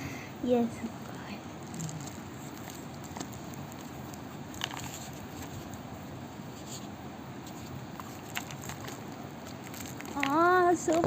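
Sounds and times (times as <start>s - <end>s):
packaging rustling: 1.6s - 5.8s, 7.5s - 11.0s.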